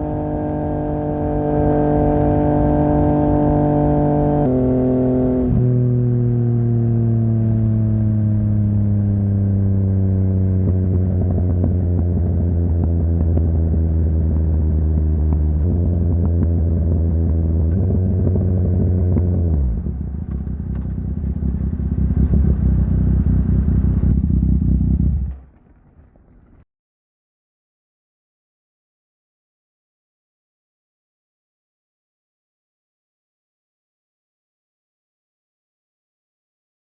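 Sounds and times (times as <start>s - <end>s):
motorcycle engine slowing down: 4.3s - 26.6s
motorcycle engine rough idle: 20.0s - 26.6s.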